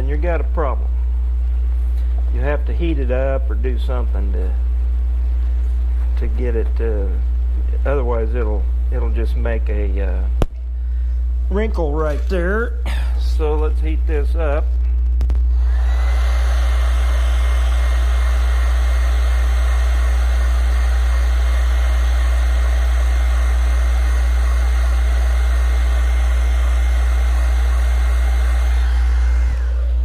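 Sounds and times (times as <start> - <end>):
steady low hum: 0.0 - 30.0
heat gun blowing: 15.5 - 30.0.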